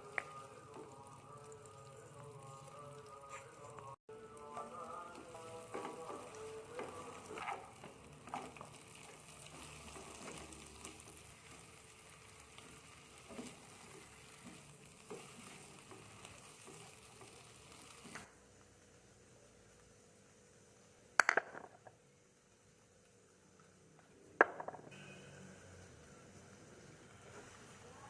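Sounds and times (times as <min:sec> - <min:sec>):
vegetables sizzling in a pan: 0:00.0 - 0:03.0, 0:04.1 - 0:21.2, 0:24.9 - 0:28.0.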